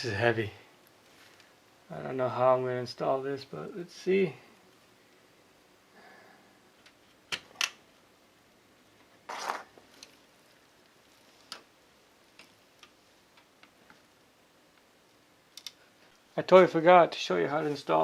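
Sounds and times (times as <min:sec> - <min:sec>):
scraping rustle: 0:09.2 - 0:10.2.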